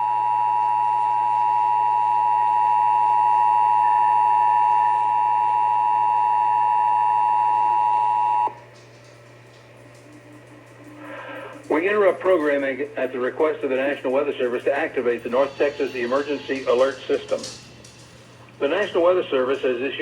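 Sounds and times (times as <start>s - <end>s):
emergency alert two-tone signal: 0.0s - 8.6s.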